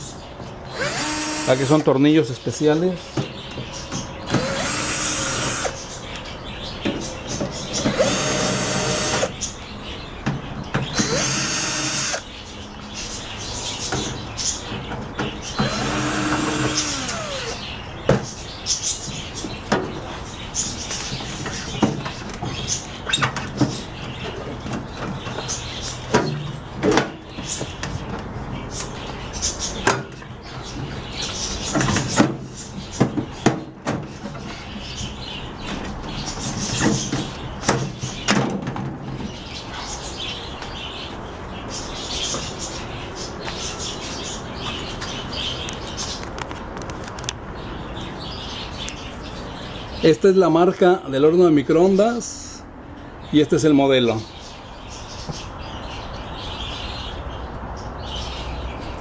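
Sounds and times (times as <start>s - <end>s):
high chirping: 0.0s - 10.2s, 10.8s - 14.7s, 15.4s - 21.8s
power screwdriver whirring: 0.7s - 1.9s, 4.3s - 5.8s, 7.8s - 9.4s, 10.9s - 12.2s, 15.6s - 17.6s.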